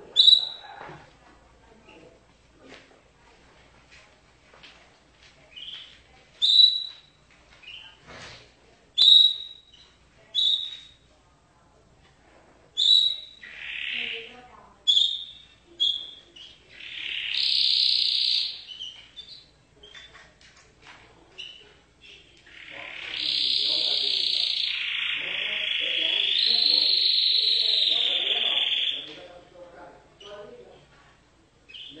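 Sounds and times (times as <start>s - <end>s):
canary chirping and trilling: 0.0s - 0.8s, 5.5s - 8.4s, 9.0s - 11.1s, 12.8s - 20.6s, 21.3s - 29.6s, 31.6s - 32.0s.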